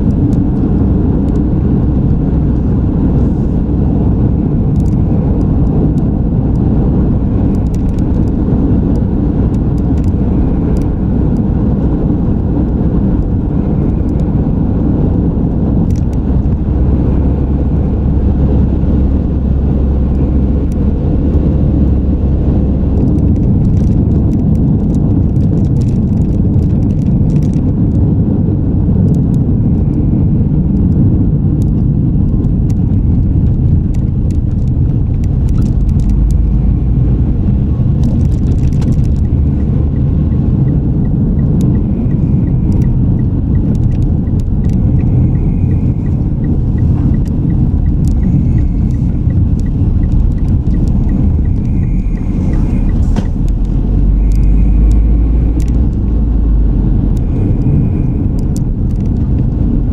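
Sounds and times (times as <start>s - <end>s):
tyre and engine rumble: 0.0s - 59.9s
faint regular ticking: 38.0s - 56.2s.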